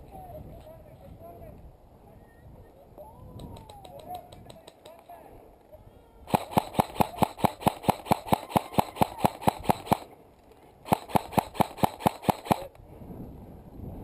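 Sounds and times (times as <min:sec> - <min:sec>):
airsoft gun firing: 0:06.3 - 0:10.1, 0:10.8 - 0:12.7.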